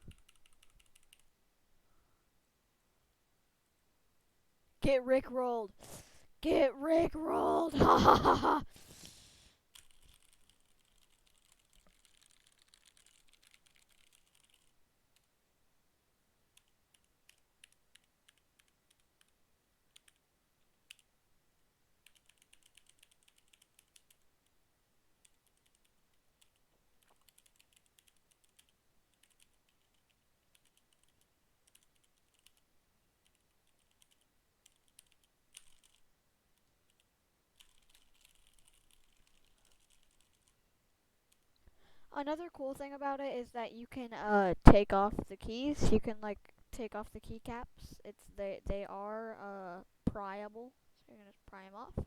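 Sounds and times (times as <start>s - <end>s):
mechanical keyboard typing: 0.0s - 1.2s, 9.7s - 15.3s, 16.6s - 20.2s, 22.0s - 24.2s, 25.2s - 32.6s, 33.2s - 36.0s, 36.9s - 40.6s.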